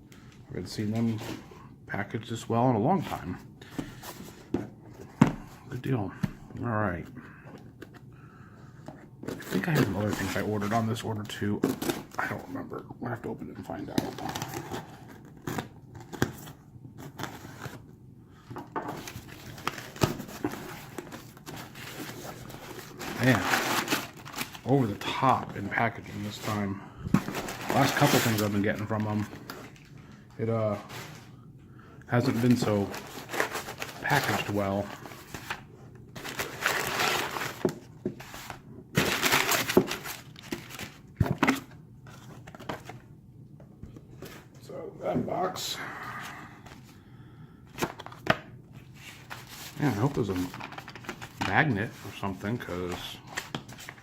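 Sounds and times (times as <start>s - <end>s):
cardboard packing rustling: 8.8s - 12.6s, 13.6s - 17.8s, 18.8s - 31.3s, 32.2s - 43.1s, 47.7s - 54.0s
packing material crinkling: 19.1s - 25.5s.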